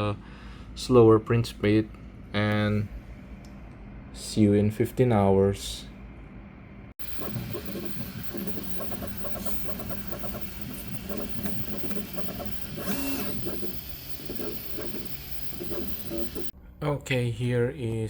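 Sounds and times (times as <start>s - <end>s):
printer stepper motors whirring: 7.0s - 16.6s.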